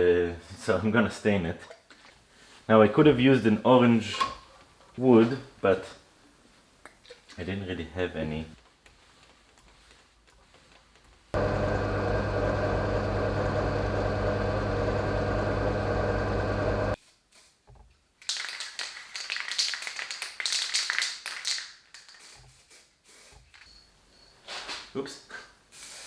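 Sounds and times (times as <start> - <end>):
electric motor humming: 11.4 - 17.0.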